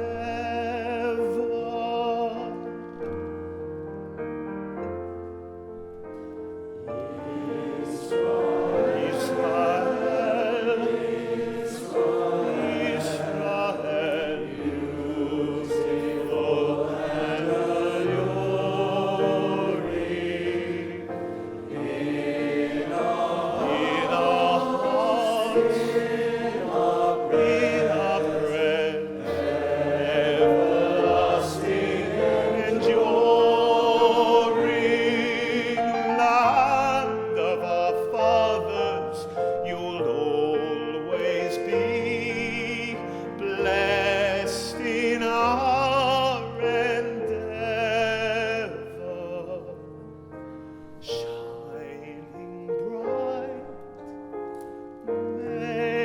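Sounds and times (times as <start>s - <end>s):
piano accompaniment: 0.0s - 56.0s
choir singing: 6.8s - 49.7s.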